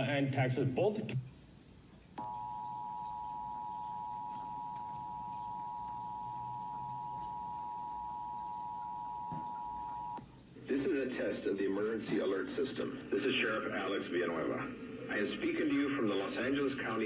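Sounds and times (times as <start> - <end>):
steady two-tone alert signal: 2.2 - 10.2.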